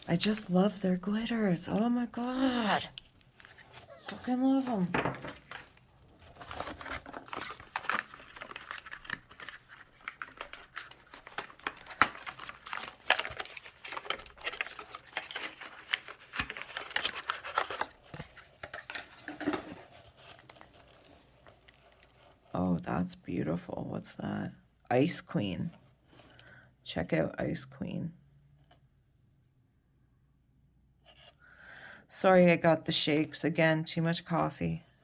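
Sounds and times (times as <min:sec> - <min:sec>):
packaging crinkling and rustling: 0:00.0 - 0:22.6.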